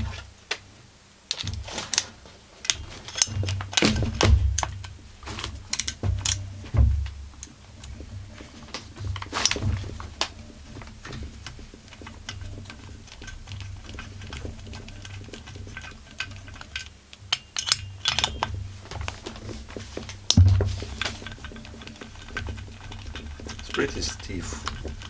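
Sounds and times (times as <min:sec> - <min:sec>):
loud knock: 0:20.4 - 0:21.0.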